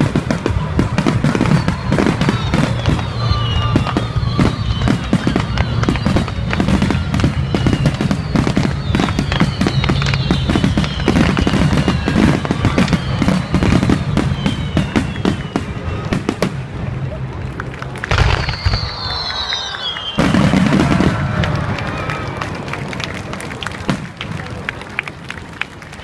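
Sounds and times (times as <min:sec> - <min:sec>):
fireworks whistles falling in pitch: 0:00.0 - 0:16.6, 0:18.1 - 0:21.4
fireworks bangs and crackles: 0:00.0 - 0:26.0.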